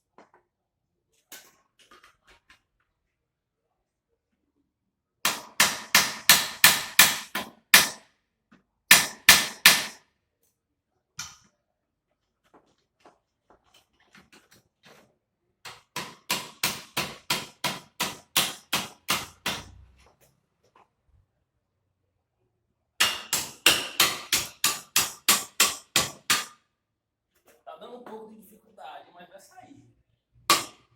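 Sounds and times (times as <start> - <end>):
hammer striking steel bar: 5.3 - 8.1, 8.9 - 10.0, 15.7 - 19.7, 23.0 - 26.6, 30.5 - 30.9.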